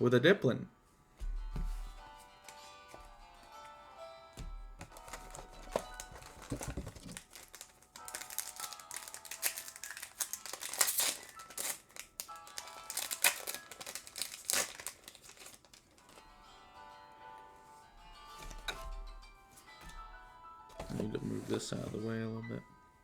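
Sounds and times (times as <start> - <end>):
quiet background music: 0.0 - 23.0
foil wrapper crinkling: 4.8 - 16.3.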